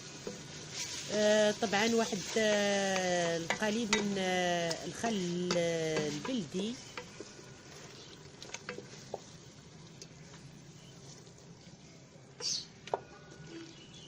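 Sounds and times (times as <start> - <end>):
meat sizzling in a pot: 0.0 - 13.9.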